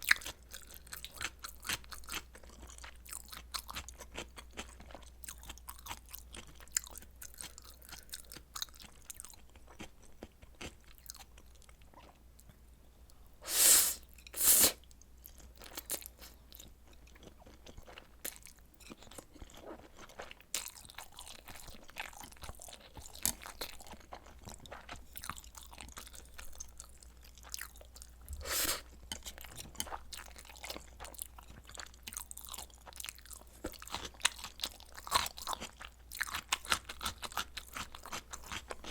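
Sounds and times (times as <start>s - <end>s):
person chewing: 0.0s - 12.6s, 13.4s - 38.9s.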